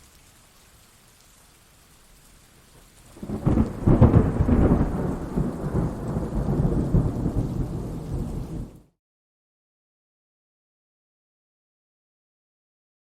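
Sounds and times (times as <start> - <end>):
faint rain hiss: 0.0 - 9.0
thunder crack and rumble: 3.2 - 8.9.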